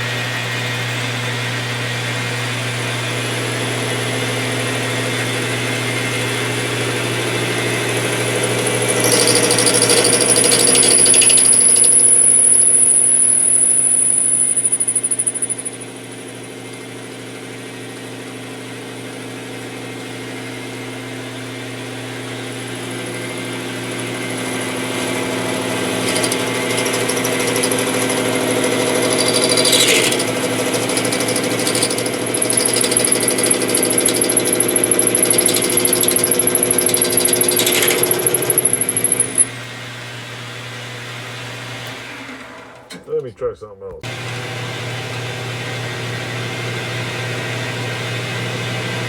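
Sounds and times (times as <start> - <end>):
metal lathe whining: 4.8 - 16.2, 22.5 - 39.6
high-pitched squeal: 8.6 - 15.8, 28.8 - 39.5.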